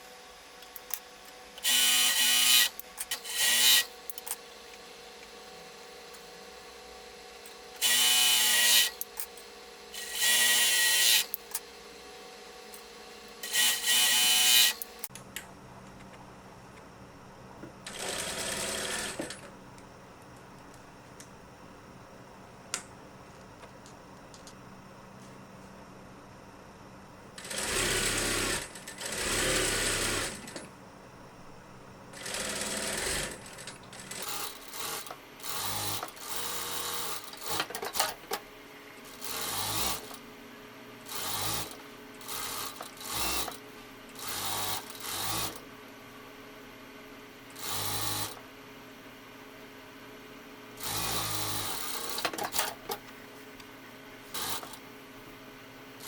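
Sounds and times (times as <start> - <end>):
sewing machine stitching: 17.8 - 19.4, 27.4 - 30.7, 32.1 - 38.4, 39.1 - 40.2, 41.1 - 43.6, 44.2 - 45.6, 54.3 - 54.8.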